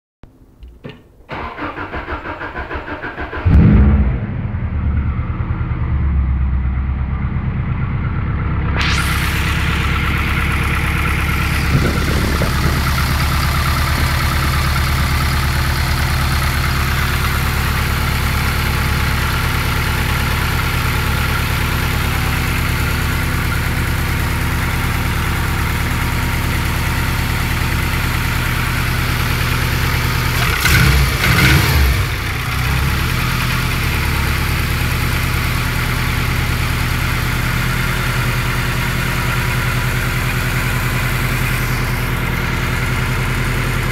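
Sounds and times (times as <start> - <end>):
car engine idling with knocking: 9.7 - 43.9.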